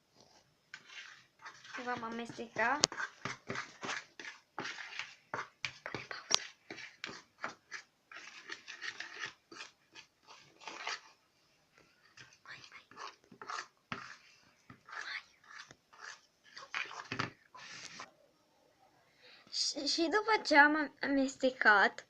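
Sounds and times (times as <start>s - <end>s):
fork scraping slime in a bowl: 0.2s - 11.2s, 11.9s - 18.1s.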